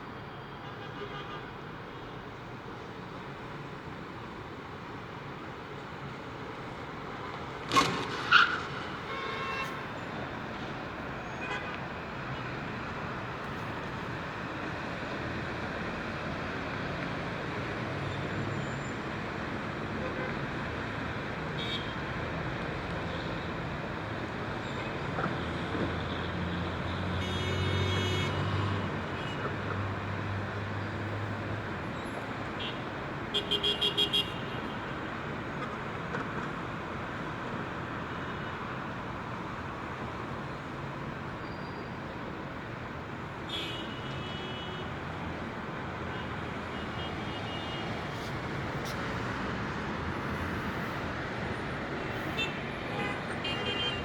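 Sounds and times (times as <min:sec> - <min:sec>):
road traffic noise: 0:00.0 - 0:54.0.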